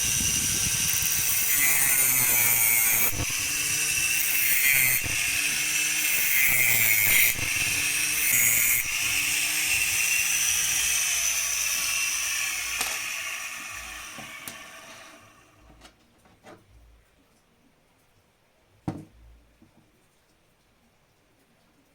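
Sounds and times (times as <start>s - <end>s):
mini grinder whine: 0.0s - 15.7s.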